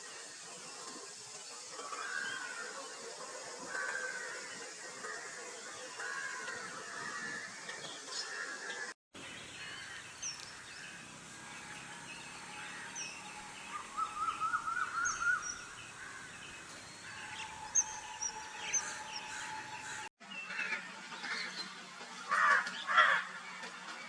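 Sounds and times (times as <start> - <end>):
outdoor background hiss: 0.0 - 24.0
birds chirping and calling: 3.7 - 21.6
faint steady tone: 9.2 - 20.1.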